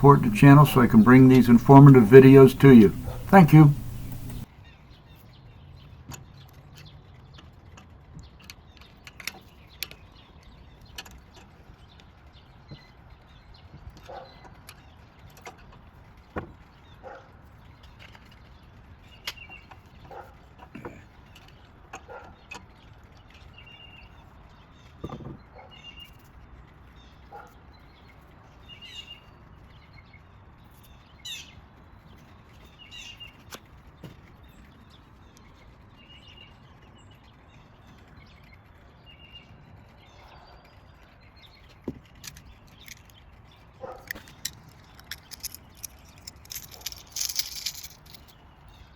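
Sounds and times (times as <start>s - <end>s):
bird calling: 0.0s - 4.4s
small tools clicking and knocking: 0.0s - 4.4s, 41.9s - 43.2s, 44.0s - 48.4s.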